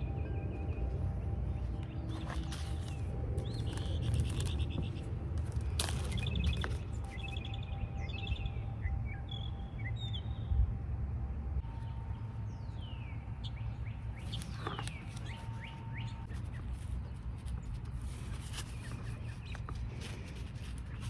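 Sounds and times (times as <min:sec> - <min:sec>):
low outdoor rumble: 0:00.0 - 0:21.0
birds chirping and calling: 0:01.8 - 0:08.7, 0:12.5 - 0:21.0.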